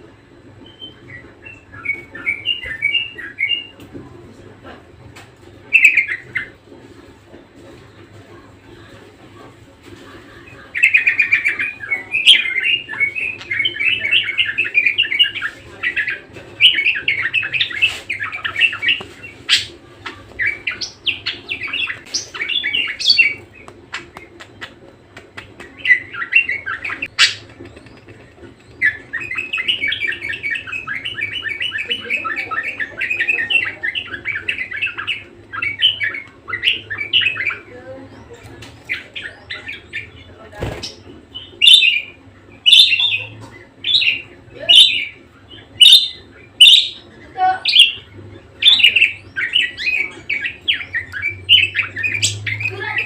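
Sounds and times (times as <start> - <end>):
budgerigar warbling: 40.9 - 53.0.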